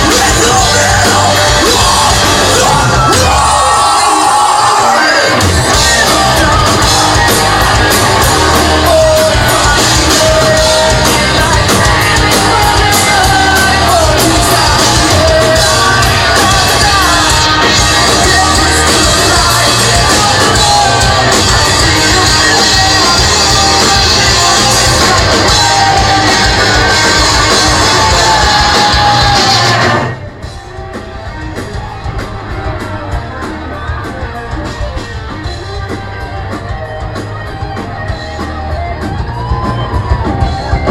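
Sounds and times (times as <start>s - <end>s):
shouted vocals: 0.0s - 30.2s
live rock band playing: 0.0s - 40.9s
person singing: 0.0s - 40.9s.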